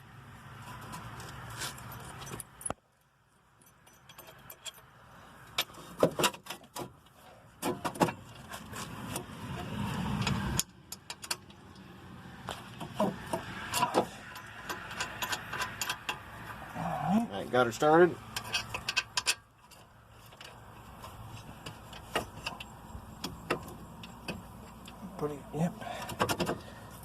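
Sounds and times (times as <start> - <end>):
metal bolts and tools clinking: 1.8 - 2.8, 3.6 - 6.9, 10.2 - 11.8, 12.8 - 16.6, 18.3 - 27.0.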